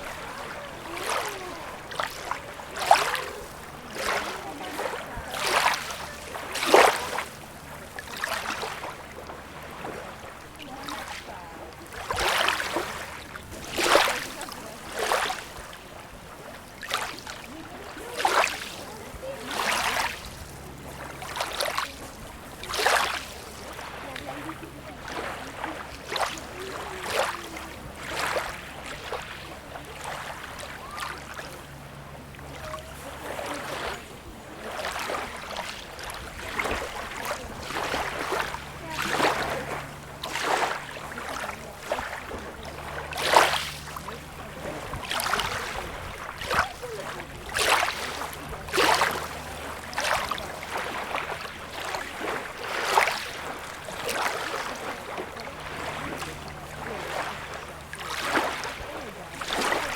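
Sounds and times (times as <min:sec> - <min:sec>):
sea waves lapping at shore: 0:00.0 - 0:59.9.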